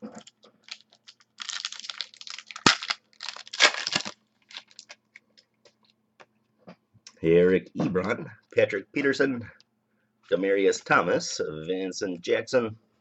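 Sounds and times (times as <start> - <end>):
plastic packaging crinkling: 0.0 - 5.9.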